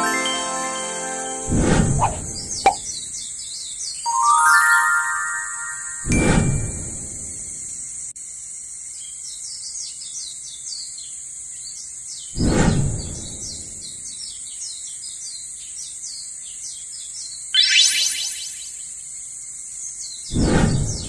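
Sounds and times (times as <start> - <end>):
high insect-like hiss: 1.1 - 3.8, 7.0 - 12.4, 15.1 - 21.0
birds chirping: 1.9 - 4.5.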